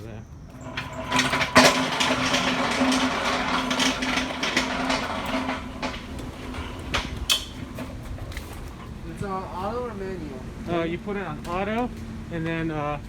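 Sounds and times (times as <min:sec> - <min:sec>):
low machine hum: 0:00.1 - 0:13.0
machinery clattering and rattling: 0:00.5 - 0:09.2
sharp clicks and knocks: 0:00.6 - 0:08.7.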